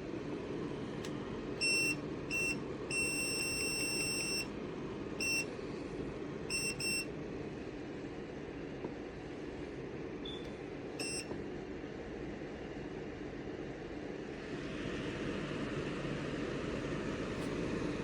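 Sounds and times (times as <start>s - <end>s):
heater button beeps: 1.6s - 4.5s, 5.2s - 5.5s, 6.5s - 7.1s, 10.2s - 11.4s.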